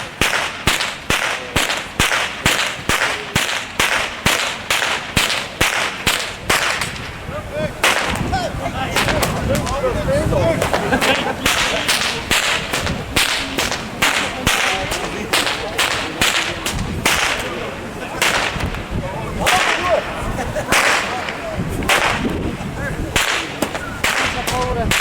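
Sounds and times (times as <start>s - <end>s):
whip cracks: 0.0s - 7.1s, 7.8s - 8.3s, 9.0s - 9.8s, 10.6s - 18.8s, 19.4s - 20.0s, 20.7s - 22.4s, 23.2s - 25.0s.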